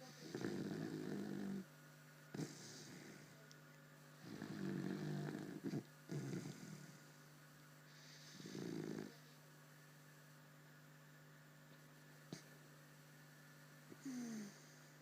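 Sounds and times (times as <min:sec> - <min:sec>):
steady low hum: 0:00.0 - 0:15.0
snorting breaths: 0:02.3 - 0:03.4, 0:04.2 - 0:07.2, 0:07.9 - 0:09.4
person snoring: 0:04.2 - 0:07.0, 0:08.0 - 0:09.2, 0:14.0 - 0:14.8.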